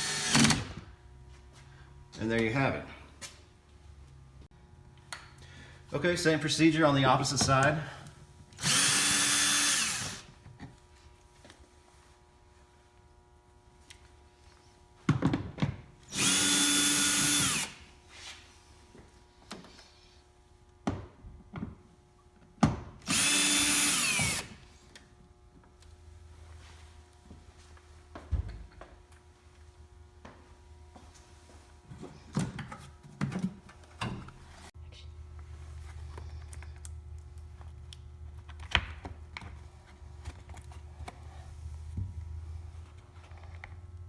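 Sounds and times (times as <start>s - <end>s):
drill running: 0.0s - 0.8s, 8.6s - 10.3s, 16.1s - 17.9s, 23.0s - 24.6s.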